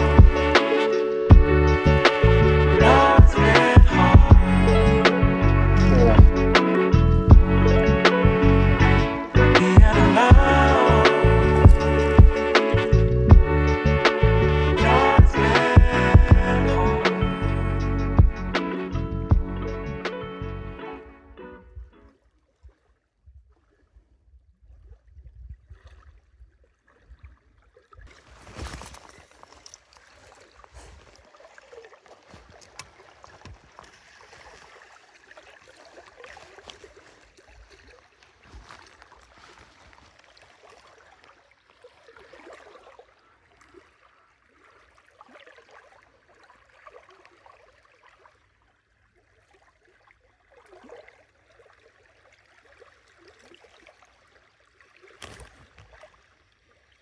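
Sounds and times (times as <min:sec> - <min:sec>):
water sloshing and gurgling: 0:00.0 - 0:57.0
low rumble: 0:01.3 - 0:20.8.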